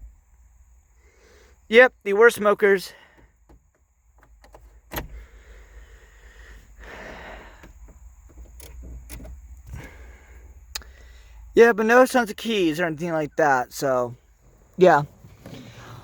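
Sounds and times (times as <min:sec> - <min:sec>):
clicks and knocks of car fittings: 0:03.1 - 0:05.3, 0:07.6 - 0:10.0
light rustling: 0:07.3 - 0:11.4.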